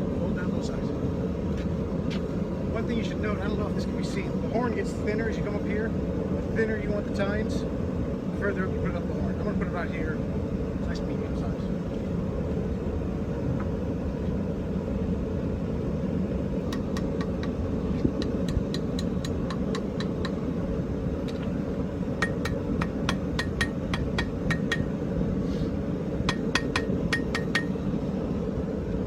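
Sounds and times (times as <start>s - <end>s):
hammer striking hot iron on anvil: 16.7s - 20.4s, 22.2s - 25.0s, 26.2s - 27.8s.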